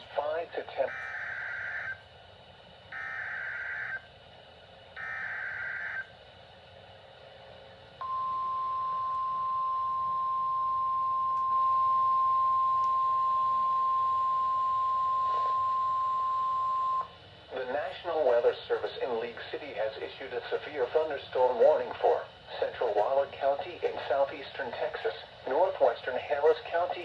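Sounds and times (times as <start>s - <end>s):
steady warning alarm tone: 0.9s - 2.0s, 2.9s - 4.1s, 5.0s - 6.1s, 8.0s - 17.1s.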